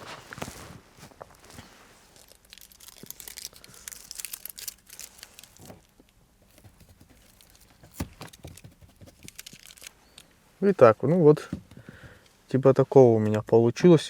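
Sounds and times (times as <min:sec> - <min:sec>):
foam tape tearing and crinkling: 0:02.1 - 0:05.9, 0:07.1 - 0:09.9.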